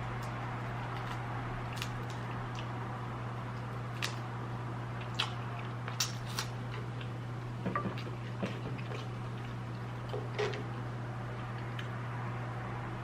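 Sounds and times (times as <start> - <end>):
steady low hum: 0.0 - 13.0
chewing mouth sounds: 4.9 - 7.2.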